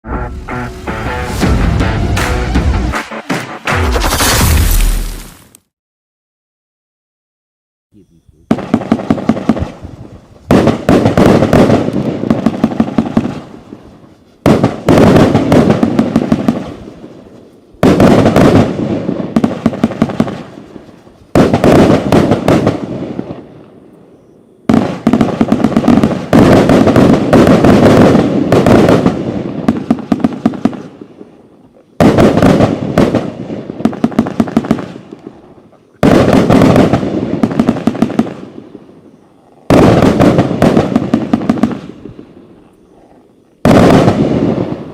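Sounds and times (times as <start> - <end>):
firework volleys of sharp bangs: 8.5 - 23.9, 24.6 - 42.6, 43.6 - 44.9.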